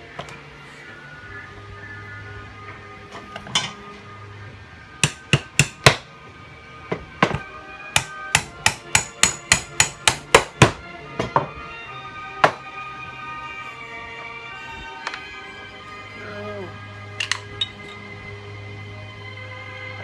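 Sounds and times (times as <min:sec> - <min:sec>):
hammer striking metal part: 0:05.0 - 0:06.1, 0:07.2 - 0:11.5.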